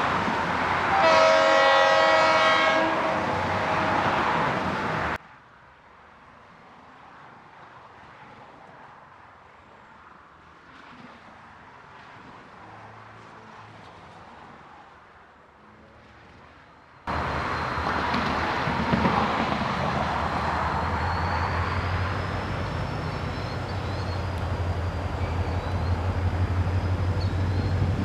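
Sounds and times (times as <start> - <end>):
diesel locomotive engine rumble: 0.0 - 5.2, 17.1 - 28.0
faint outdoor background: 0.0 - 28.0.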